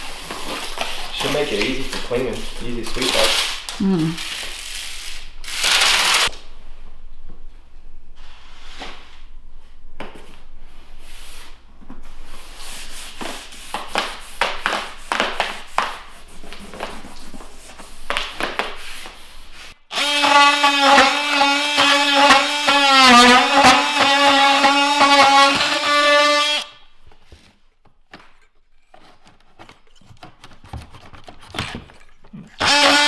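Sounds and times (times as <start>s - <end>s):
flooring planks scraping and tapping: 27.2s - 32.2s.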